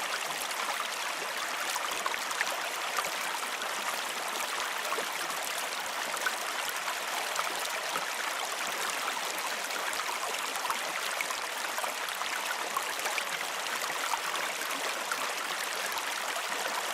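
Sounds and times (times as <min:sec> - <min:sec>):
water flowing and babbling: 0:00.0 - 0:16.9.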